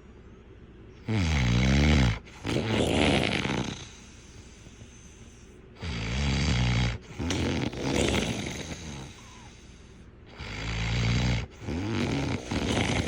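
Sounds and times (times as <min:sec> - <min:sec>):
person snoring: 0:01.0 - 0:04.2, 0:05.8 - 0:09.7, 0:10.3 - 0:13.0.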